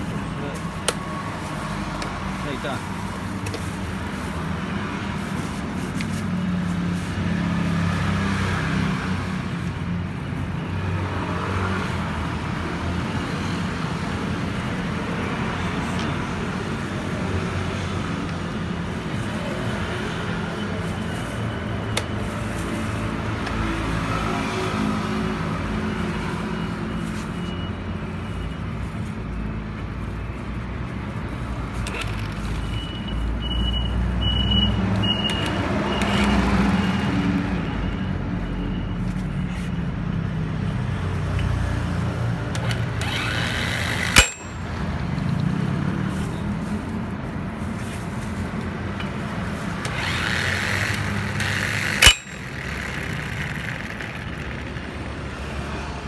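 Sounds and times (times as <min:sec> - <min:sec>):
sharp click: 0:42.6 - 0:44.7, 0:49.8 - 0:54.4.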